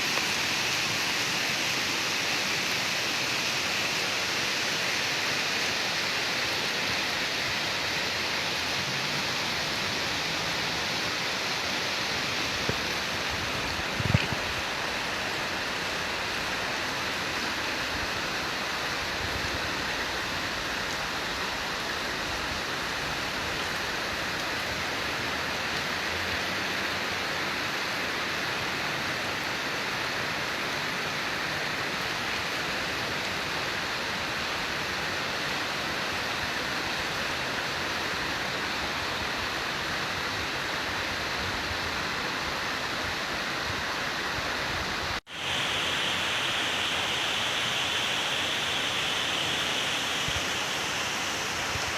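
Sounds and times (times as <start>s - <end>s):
heavy rain downpour: 0.0s - 51.9s.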